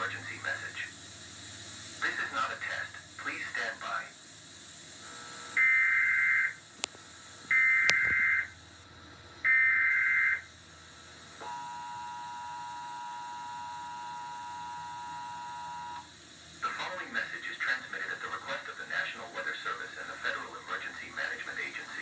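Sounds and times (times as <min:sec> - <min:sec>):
buzzing data bursts: 0:07.5 - 0:08.5.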